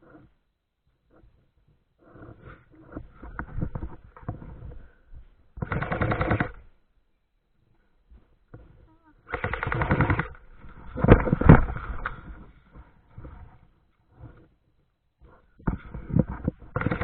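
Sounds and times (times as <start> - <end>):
airsoft gun full-auto bursts: 5.6 - 6.6, 9.3 - 10.4, 16.7 - 17.0.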